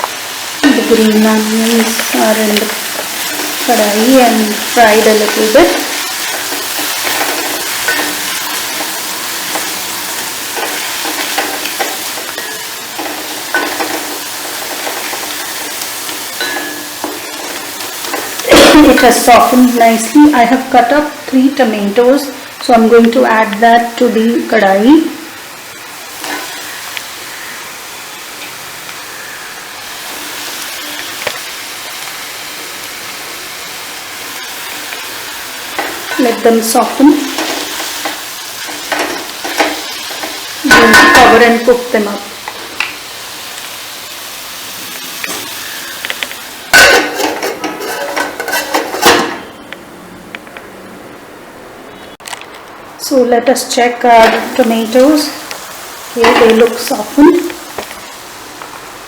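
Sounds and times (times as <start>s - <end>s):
onions sizzling in oil: 0.0s - 50.2s, 51.9s - 59.0s
stirring scraping pan: 0.6s - 19.6s, 35.7s - 41.8s, 45.2s - 49.6s.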